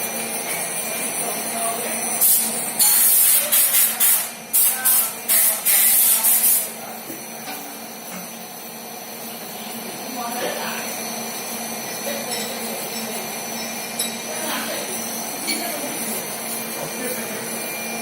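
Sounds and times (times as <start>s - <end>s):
steady machine hum: 0.0s - 18.0s
high-pitched hissing spray bursts: 2.2s - 6.7s.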